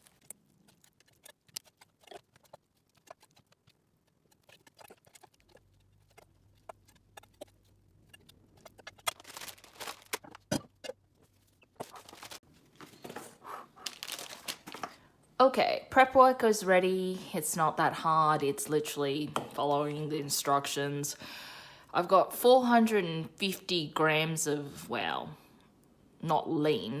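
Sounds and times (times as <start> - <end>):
small clicks and rustles: 0.0 - 10.5.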